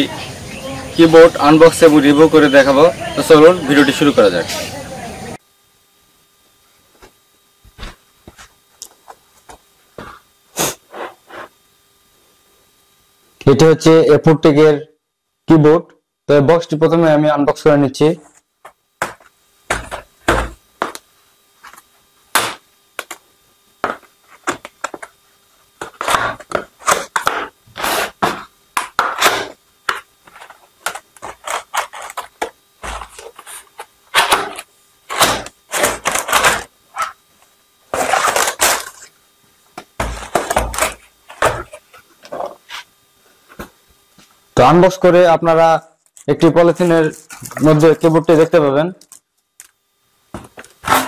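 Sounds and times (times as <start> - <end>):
knocks and thumps: 19.0 - 21.0, 39.8 - 42.6
cardboard scraping and sliding: 25.8 - 37.2, 37.9 - 39.1.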